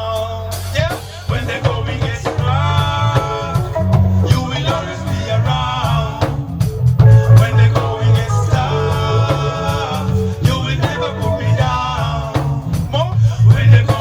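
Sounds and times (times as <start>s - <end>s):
live reggae band playing: 0.0s - 14.0s
person singing: 1.4s - 14.0s.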